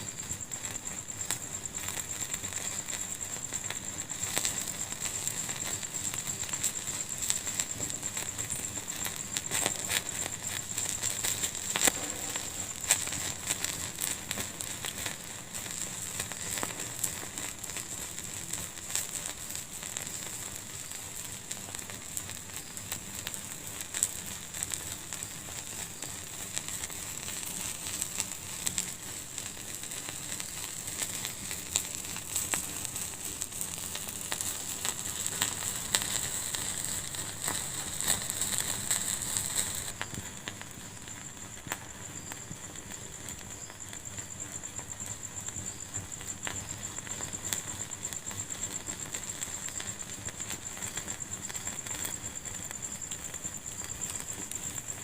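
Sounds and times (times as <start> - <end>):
sharp pops over soft hiss: 0.0 - 55.0
wood fire crackling: 0.0 - 55.0.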